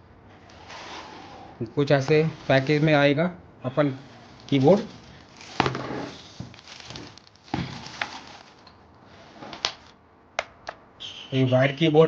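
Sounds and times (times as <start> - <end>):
plastic packaging crinkling: 4.1 - 8.8
sharp clicks and taps: 10.4 - 10.8.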